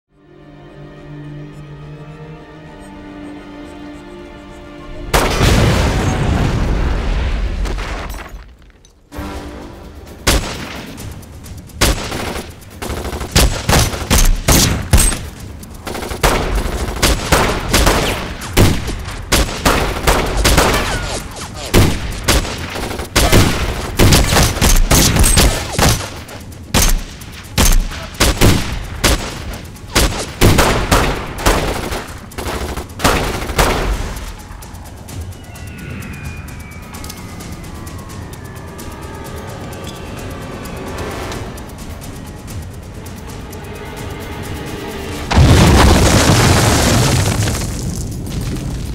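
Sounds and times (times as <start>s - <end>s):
background music: 0.1s - 7.3s, 8.8s - 48.2s
gunshots in rapid volleys: 5.1s - 6.3s, 9.2s - 35.7s.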